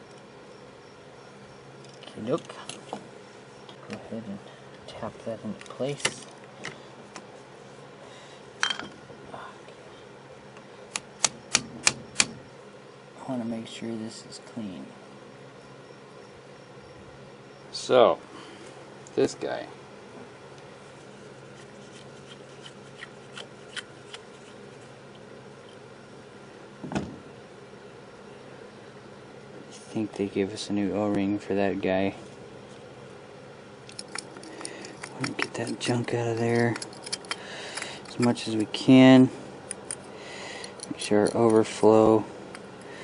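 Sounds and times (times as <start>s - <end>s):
steady low hum: 0.0s - 43.0s
knock on workbench: 26.8s - 27.2s
small metal parts clicking: 33.9s - 38.7s, 39.7s - 41.8s.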